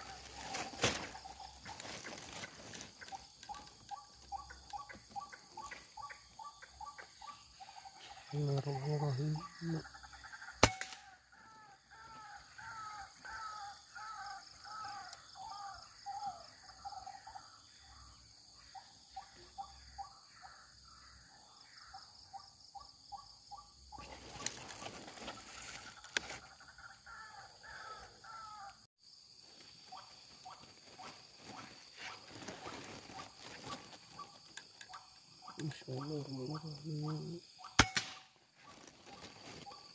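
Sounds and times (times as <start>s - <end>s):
insects droning: 0.0s - 39.9s.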